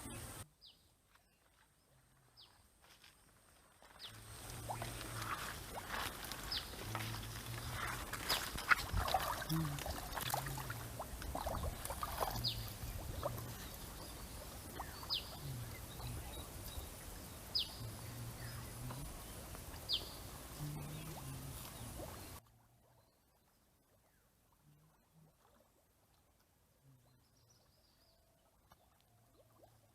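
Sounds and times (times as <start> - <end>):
splashes in water: 4.1 - 17.6.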